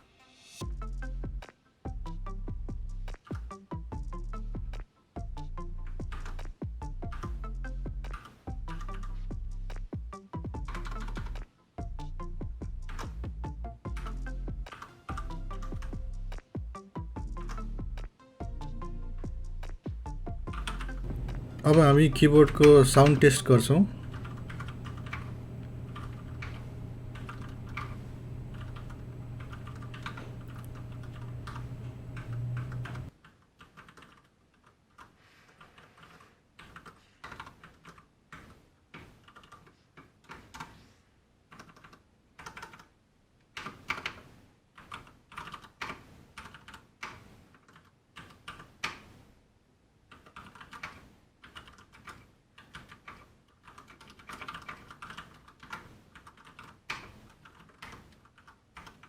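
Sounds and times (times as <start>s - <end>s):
mechanical keyboard typing: 20.5s - 40.8s, 41.5s - 49.1s, 50.1s - 59.0s
steady low hum: 20.7s - 33.1s.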